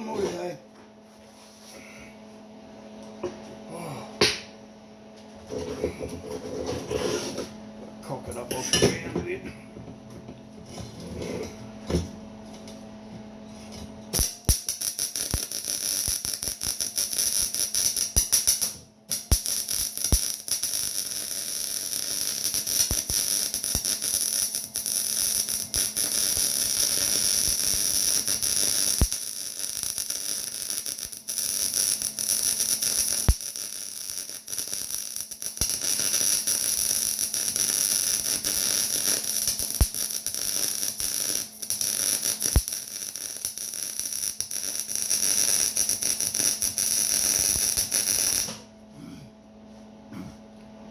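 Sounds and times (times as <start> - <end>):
welding arc crackling: 14.1 - 48.6.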